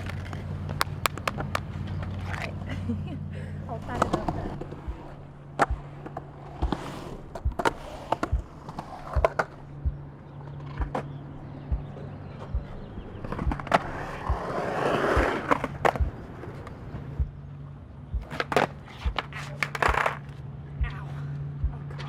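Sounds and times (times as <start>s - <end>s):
skateboard wheels clacking on seams: 0.0s - 2.7s, 12.1s - 17.2s, 18.2s - 20.4s
skateboard rolling on concrete: 0.0s - 20.7s.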